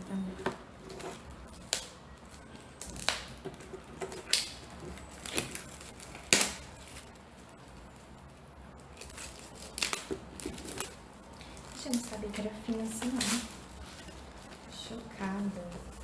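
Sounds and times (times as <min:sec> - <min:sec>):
packaging rustling: 0:00.5 - 0:16.0.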